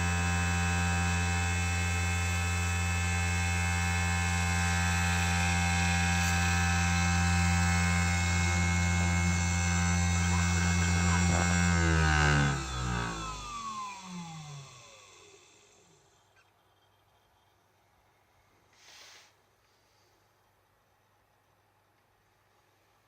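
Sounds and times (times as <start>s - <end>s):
lathe spindle motor whining: 0.0s - 16.4s.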